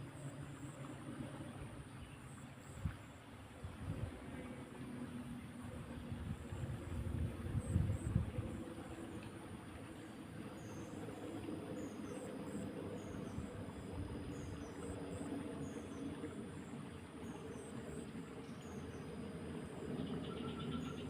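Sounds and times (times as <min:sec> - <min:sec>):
insects chirping: 0:10.4 - 0:21.0.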